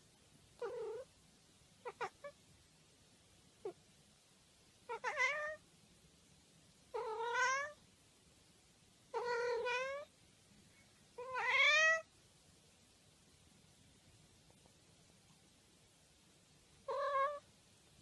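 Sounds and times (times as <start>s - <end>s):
cat meowing: 0.6s - 1.1s, 1.8s - 2.4s, 4.9s - 5.6s, 6.9s - 7.8s, 9.1s - 10.1s, 11.2s - 12.1s, 16.8s - 17.5s.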